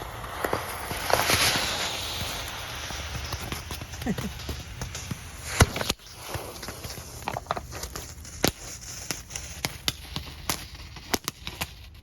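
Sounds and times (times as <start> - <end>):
firework spraying sparks hissing: 0.0 - 7.2
firework sharp pops: 0.0 - 12.0.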